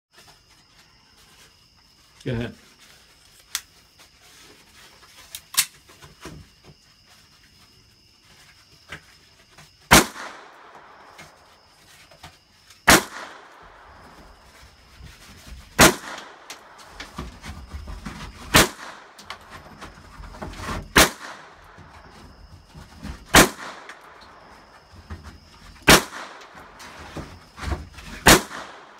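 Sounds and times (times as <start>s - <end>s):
loud gunshots: 9.9s - 11.1s, 12.9s - 13.9s, 15.8s - 16.9s, 18.5s - 19.2s, 20.9s - 21.6s, 23.3s - 24.2s, 25.8s - 26.8s, 28.2s - 28.9s.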